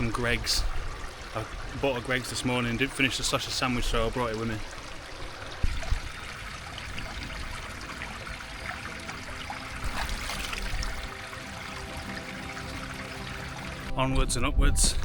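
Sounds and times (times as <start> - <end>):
stream water trickling: 0.0 - 14.0.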